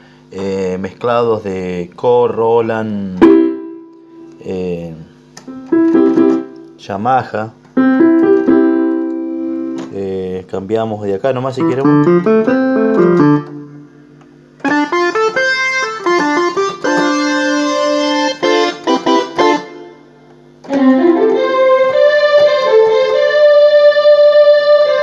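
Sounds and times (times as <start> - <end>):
synthesizer keyboard notes: 3.2 - 4.0, 5.5 - 6.8, 7.8 - 10.0, 11.6 - 14.0, 14.6 - 25.0.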